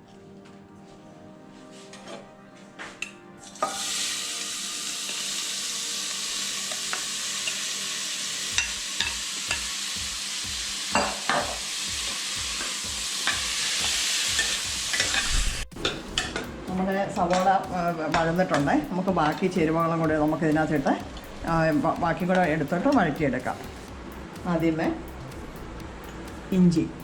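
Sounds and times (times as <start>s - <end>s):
onions sizzling in hot fat: 3.4s - 16.6s
spoon knocking against pot: 11.0s - 11.6s.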